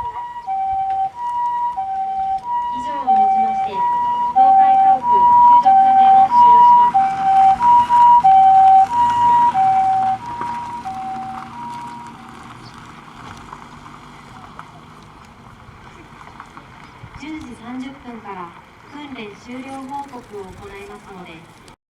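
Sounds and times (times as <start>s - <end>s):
two-tone ambulance siren: 0.0s - 13.3s.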